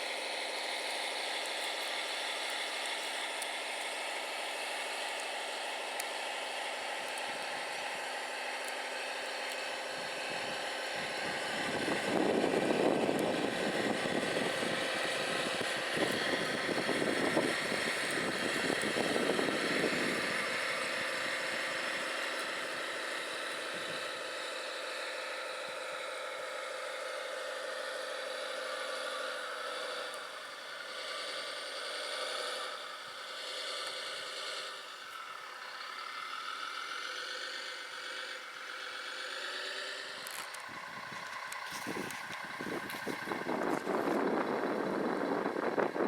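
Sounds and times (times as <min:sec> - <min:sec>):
model construction machine whine: 0:00.0 - 0:46.0.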